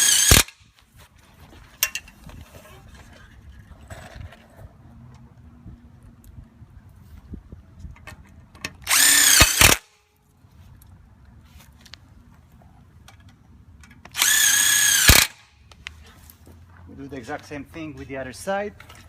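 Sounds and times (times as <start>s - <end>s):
power drill driving screws: 0.0s - 0.6s, 8.8s - 9.9s, 14.1s - 15.5s.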